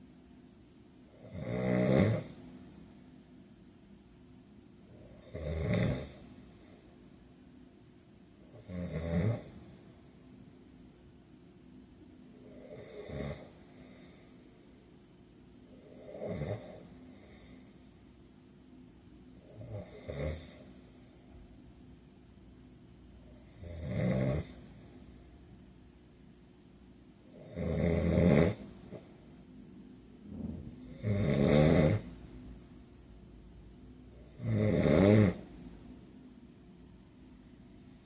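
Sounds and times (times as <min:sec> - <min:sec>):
man snoring: 0:01.1 - 0:02.4, 0:04.9 - 0:06.3, 0:08.5 - 0:09.6, 0:12.4 - 0:14.2, 0:15.7 - 0:17.6, 0:19.4 - 0:20.7, 0:23.3 - 0:24.7, 0:27.3 - 0:28.7, 0:30.3 - 0:32.1, 0:34.2 - 0:35.5.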